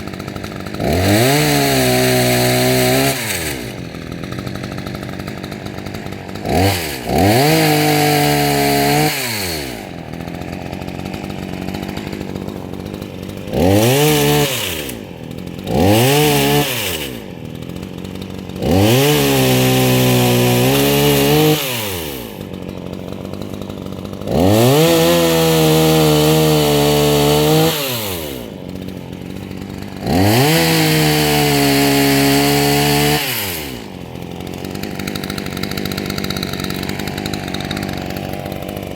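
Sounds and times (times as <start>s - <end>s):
chainsaw idling and revving: 0.0s - 38.9s.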